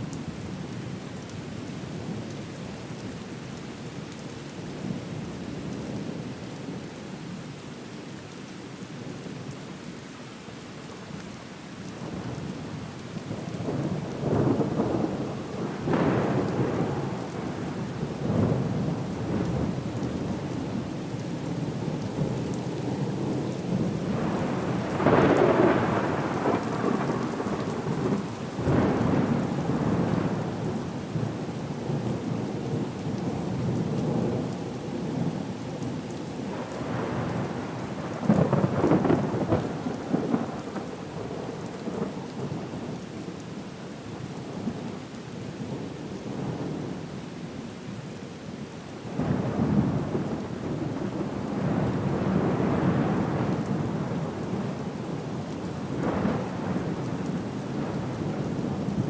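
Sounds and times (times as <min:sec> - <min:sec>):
steady rain: 0:00.0 - 0:59.0
rolling thunder rumbles: 0:23.3 - 0:30.7, 0:36.5 - 0:42.6, 0:55.9 - 0:59.0.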